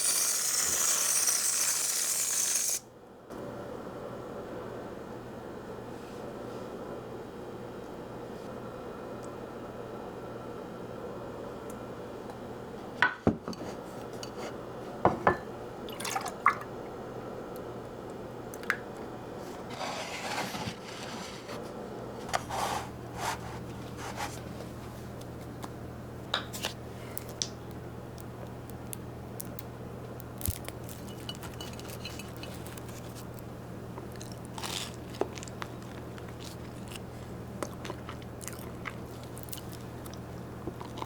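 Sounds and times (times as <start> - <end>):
steady low hum: 2.9 - 41.0
liquid pouring: 15.9 - 16.8
dishes and glass clinking: 30.9 - 32.8.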